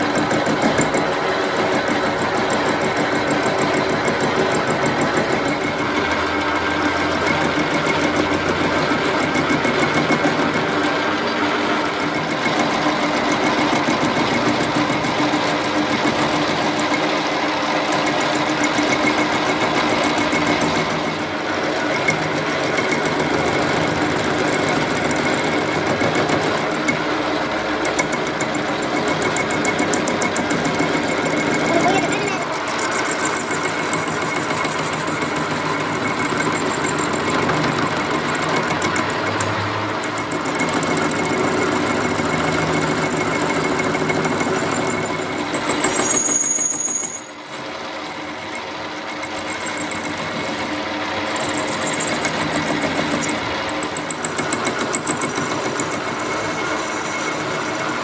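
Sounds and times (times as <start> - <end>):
metal lathe running: 0.0 - 58.0.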